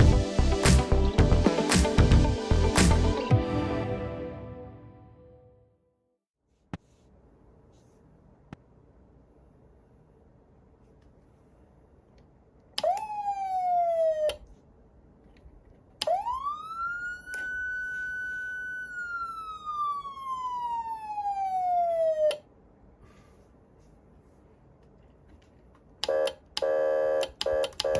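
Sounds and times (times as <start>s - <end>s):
electronic siren wailing: 12.8s - 14.4s, 16.0s - 22.4s.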